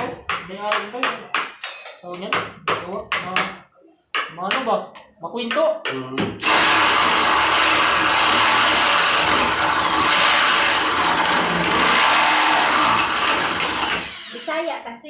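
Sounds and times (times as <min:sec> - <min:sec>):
electric drill drilling wood: 0:06.4 - 0:14.7.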